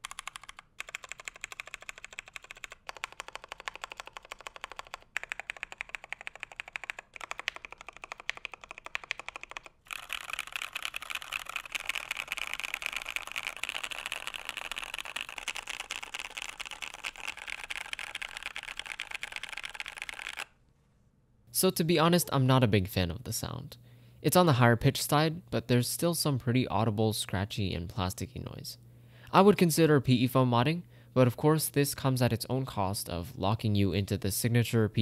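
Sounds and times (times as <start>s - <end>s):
typing on mechanical keyboard: 0.0s - 20.5s.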